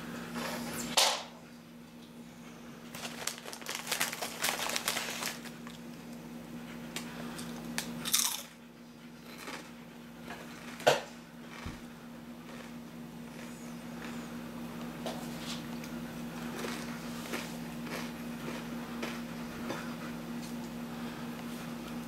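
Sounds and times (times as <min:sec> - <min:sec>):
crunchy biting and chewing: 0:07.0 - 0:14.4, 0:15.6 - 0:20.6.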